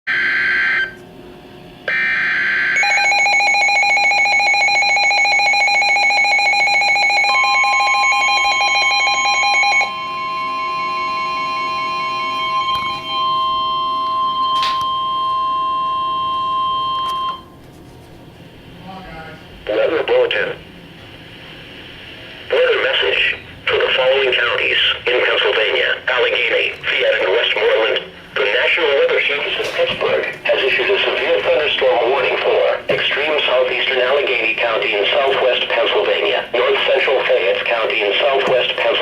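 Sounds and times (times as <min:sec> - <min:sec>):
fast-pulsing electronic alarm: 0:00.1 - 0:00.9, 0:01.9 - 0:17.4
long steady warning tone: 0:00.1 - 0:17.6
screeching digital header tones: 0:01.9 - 0:17.4, 0:22.5 - 0:29.4.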